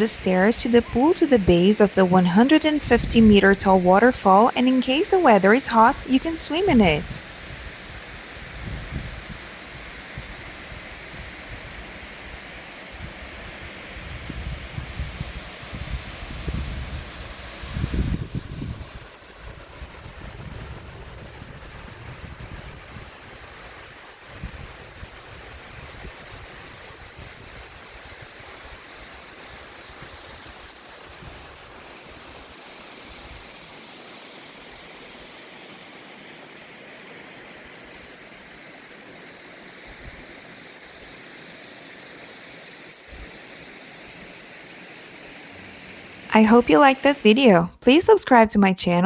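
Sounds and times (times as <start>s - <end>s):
wind buffeting microphone: 14.0s - 23.1s.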